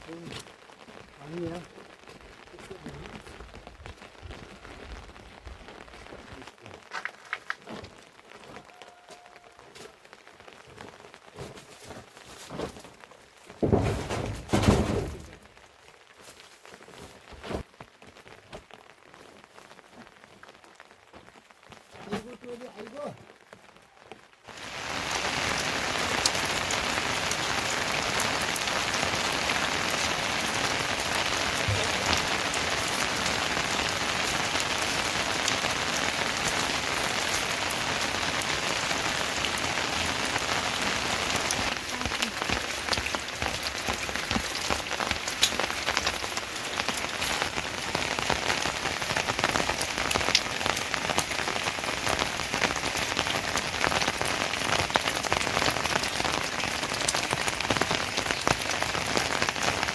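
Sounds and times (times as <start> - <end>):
steady rain falling: 0.0 - 59.9
rain drop impacts: 13.4 - 15.9, 17.4 - 59.9.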